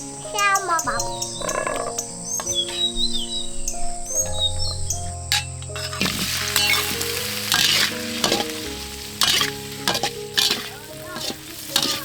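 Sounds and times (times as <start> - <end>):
soft background music: 0.0 - 12.0
utensil scraping a pan: 4.4 - 12.0
food sizzling in a frying pan: 5.3 - 12.0.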